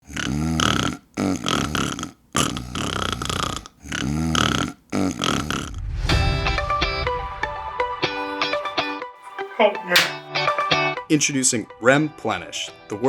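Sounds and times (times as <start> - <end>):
person snoring: 0.0 - 5.8
music: 6.1 - 13.0.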